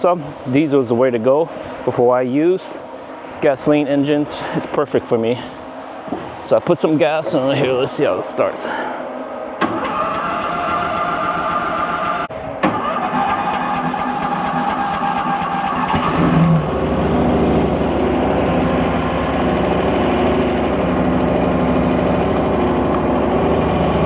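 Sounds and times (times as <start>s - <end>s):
gasoline engine starting and running: 7.0s - 24.0s.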